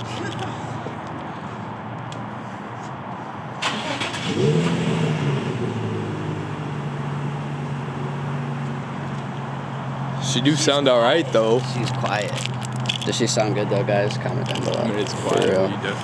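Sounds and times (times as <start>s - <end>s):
car engine starting and idling: 3.5s - 16.0s.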